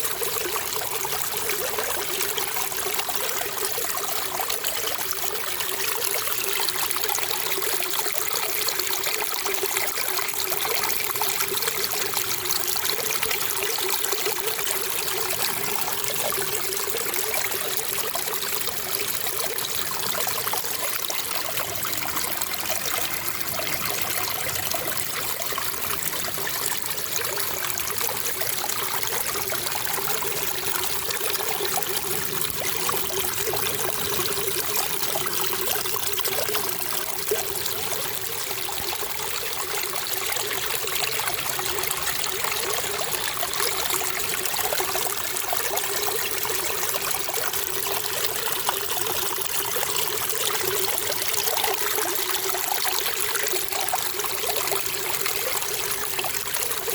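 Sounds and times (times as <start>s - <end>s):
water trickling and bubbling: 0.0s - 56.9s.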